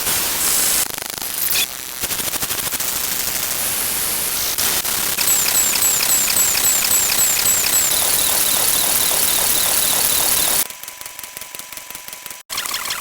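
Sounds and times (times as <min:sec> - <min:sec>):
harsh hissing static: 0:04.2 - 0:10.6
fast run of clicks: 0:05.2 - 0:10.6.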